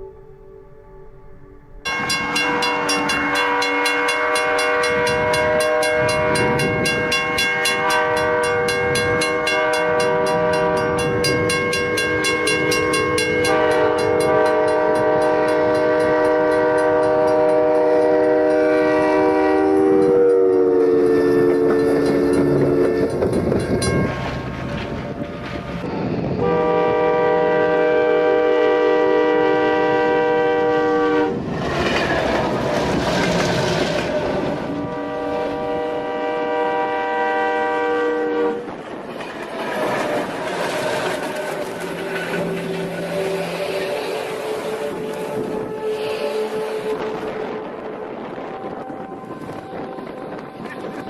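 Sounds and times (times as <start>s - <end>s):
train running: 0.0s - 51.0s
train air horn blast: 3.0s - 11.3s, 12.3s - 23.5s, 25.8s - 31.5s, 33.9s - 38.8s, 40.9s - 51.0s.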